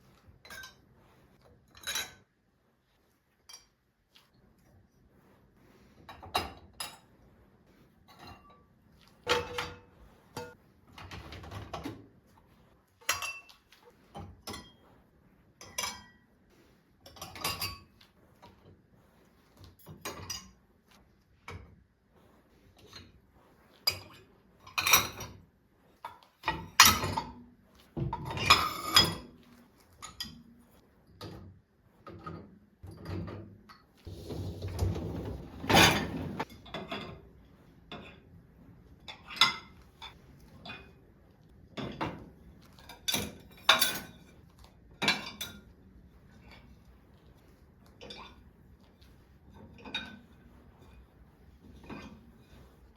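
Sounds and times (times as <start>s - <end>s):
rustling or scraping: 0.0s - 3.5s, 4.1s - 15.6s, 16.3s - 26.5s, 34.0s - 39.0s, 45.9s - 52.9s
dishes and cutlery clinking: 0.1s - 2.4s, 3.4s - 4.2s, 8.0s - 12.0s, 13.0s - 14.9s, 15.6s - 16.4s, 17.0s - 18.7s, 23.8s - 25.4s, 26.1s - 27.4s, 28.0s - 30.5s, 32.1s - 38.4s, 39.0s - 41.0s, 41.8s - 45.8s, 47.9s - 51.1s, 51.7s - 52.8s.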